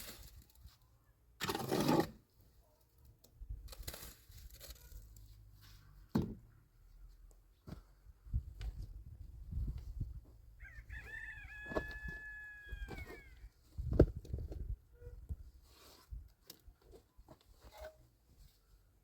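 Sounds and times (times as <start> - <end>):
rooster crowing: 10.6 - 13.4.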